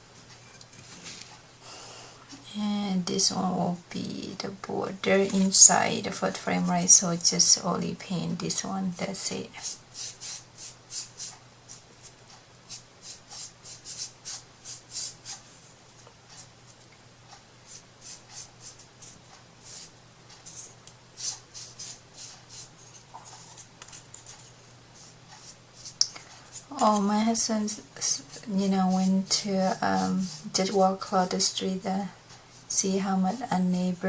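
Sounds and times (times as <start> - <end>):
faint low hum: 0.0 - 34.0
paintbrush strokes on wood: 9.6 - 15.5, 17.7 - 31.1.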